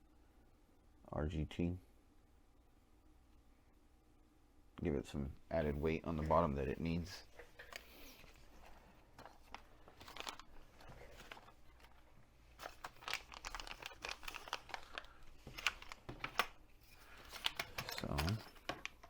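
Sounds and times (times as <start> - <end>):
packaging crinkling and rustling: 7.3 - 19.0.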